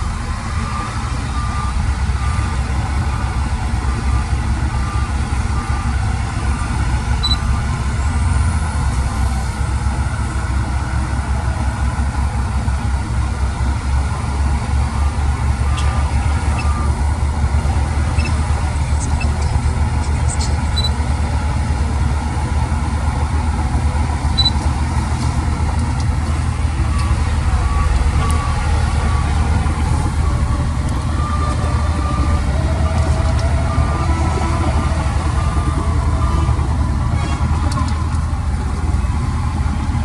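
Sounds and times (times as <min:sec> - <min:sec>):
reversing alarm beeping: 0:00.0 - 0:08.8, 0:14.2 - 0:19.7, 0:20.4 - 0:21.1, 0:24.3 - 0:24.7, 0:26.3 - 0:38.1
diesel machine engine rumble: 0:00.0 - 0:40.0.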